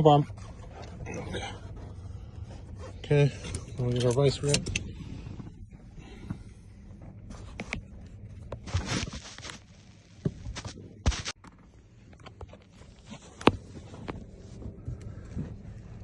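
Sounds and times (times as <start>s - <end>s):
tools scraping and rustling: 7.0s - 11.6s.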